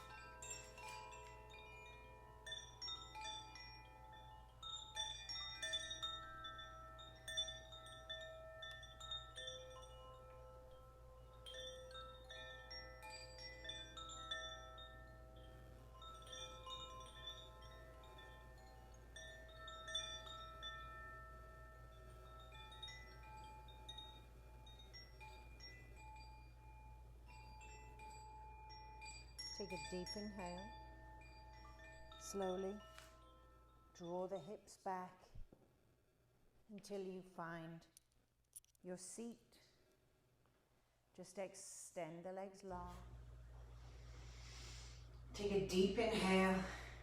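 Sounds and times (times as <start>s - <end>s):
bell-like chimes: 0.0s - 34.6s
faint low hum: 0.0s - 47.0s.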